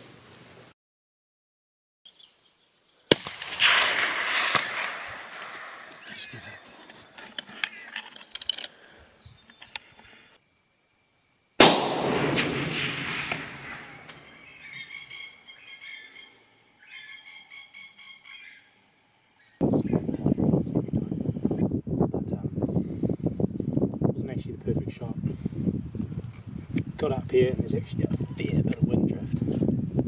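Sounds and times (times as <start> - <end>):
rifle shots with echo: 3.1 - 6.0, 11.6 - 14.5.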